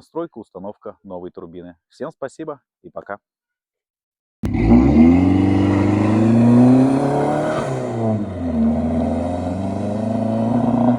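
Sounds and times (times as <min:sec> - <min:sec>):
car engine accelerating: 0:04.4 - 0:10.9.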